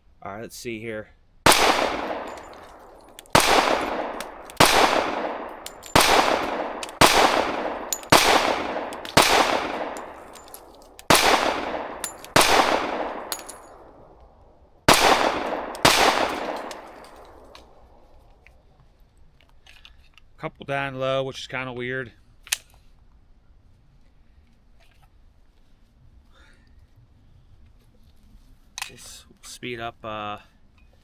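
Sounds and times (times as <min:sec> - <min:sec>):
pistol shots: 0:01.5 - 0:14.2, 0:14.9 - 0:18.0.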